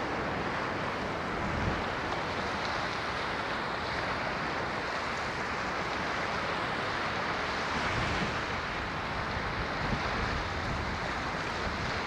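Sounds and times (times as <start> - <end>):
waves breaking: 0.0 - 12.0.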